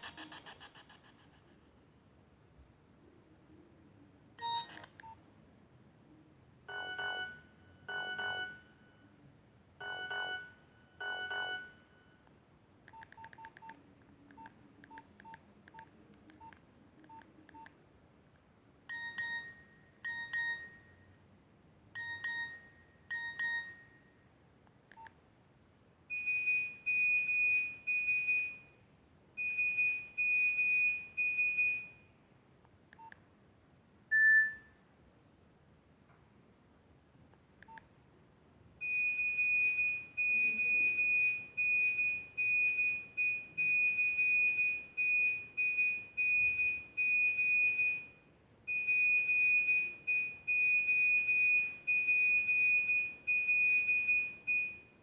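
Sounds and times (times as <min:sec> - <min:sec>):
phone electronic beeps: 0:04.4 - 0:05.2, 0:34.1 - 0:34.7.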